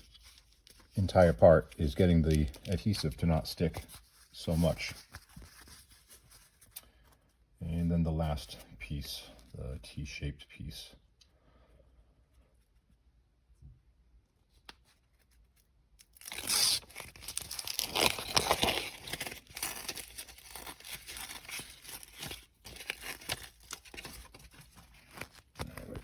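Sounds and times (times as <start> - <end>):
backing paper peeling and crinkling: 0.0 - 6.8, 14.8 - 26.0.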